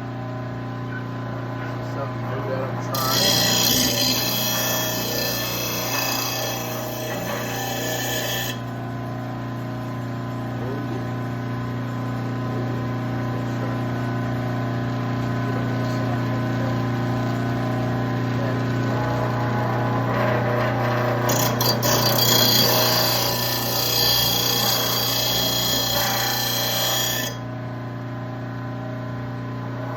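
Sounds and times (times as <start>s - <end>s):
grinding stone scraping blade: 2.9s - 8.7s, 20.0s - 27.5s.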